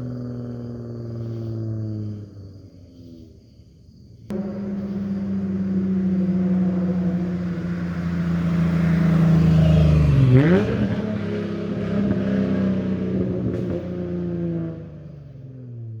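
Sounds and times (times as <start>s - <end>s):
car exhaust engine running: 0.0s - 3.2s, 4.3s - 15.1s
engine revving up: 4.3s - 15.0s.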